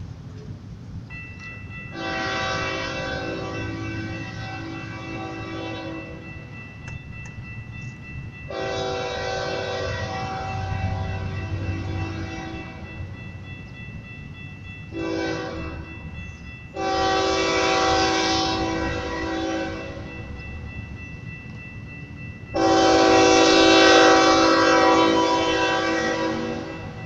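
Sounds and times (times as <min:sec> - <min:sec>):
locomotive air horn: 0:02.0 - 0:06.2, 0:08.5 - 0:12.8, 0:15.0 - 0:15.8, 0:16.8 - 0:20.1, 0:22.6 - 0:26.9.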